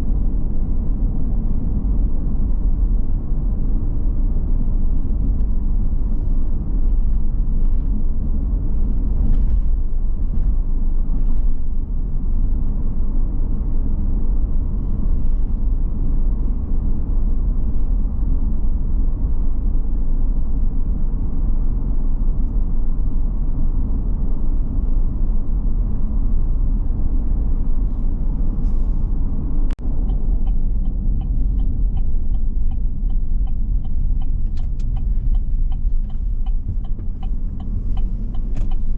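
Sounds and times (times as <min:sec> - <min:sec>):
car road and engine rumble: 0:00.0 - 0:38.9
light regular ticking: 0:29.7 - 0:38.9.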